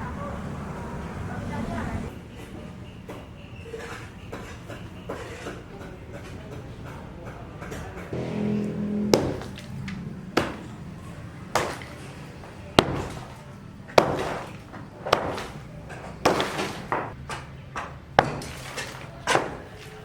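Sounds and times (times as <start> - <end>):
hammer striking with sharp ringing: 8.1 - 9.8, 12.8 - 13.4, 14.0 - 15.6.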